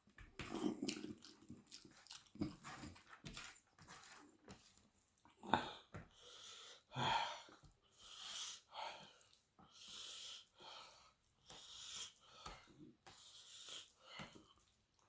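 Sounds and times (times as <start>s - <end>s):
mouth chewing noises: 0.3s - 3.1s
heavy breaths: 5.4s - 14.6s.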